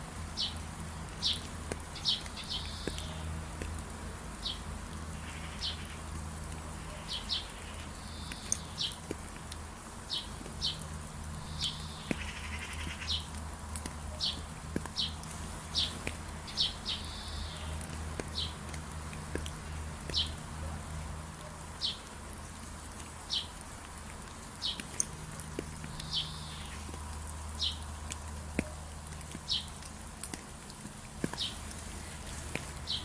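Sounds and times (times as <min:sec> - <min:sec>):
steady background hiss: 0:00.0 - 0:33.0
birds chirping: 0:00.4 - 0:03.4, 0:04.4 - 0:06.1, 0:06.8 - 0:09.2, 0:10.1 - 0:20.5, 0:21.7 - 0:22.2, 0:23.2 - 0:23.6, 0:24.3 - 0:29.9, 0:30.8 - 0:33.0.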